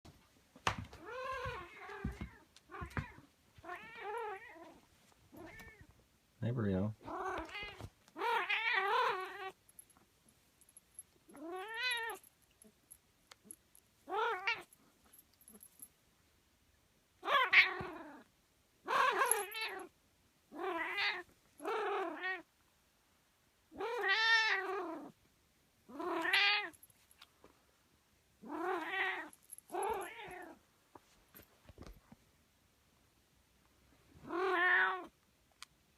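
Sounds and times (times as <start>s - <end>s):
cat meowing: 20.6s - 22.4s, 23.8s - 25.0s, 28.5s - 30.6s, 34.2s - 35.1s.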